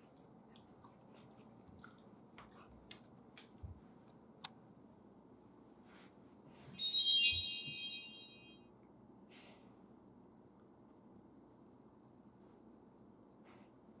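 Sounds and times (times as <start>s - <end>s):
high-pitched ringing tone: 6.8s - 8.6s.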